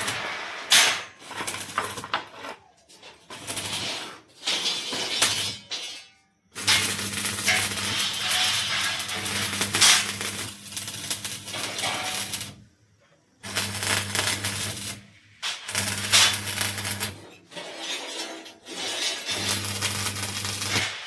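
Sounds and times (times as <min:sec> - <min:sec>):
welding arc crackling: 0:06.6 - 0:12.6, 0:13.4 - 0:17.2, 0:19.3 - 0:21.0.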